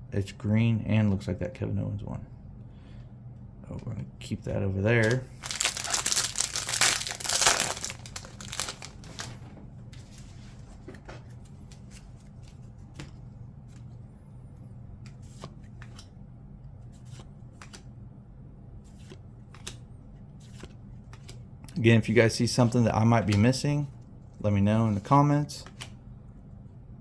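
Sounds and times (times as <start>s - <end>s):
cards clicking and flicking: 5.0s - 9.4s, 17.1s - 17.9s
wrapper crinkling and tearing: 5.0s - 9.4s.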